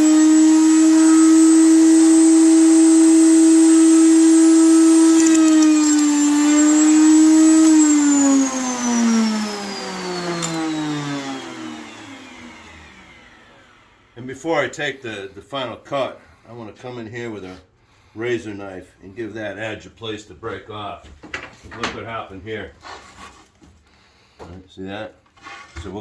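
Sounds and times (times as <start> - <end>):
wood router whining: 0.0 - 14.2.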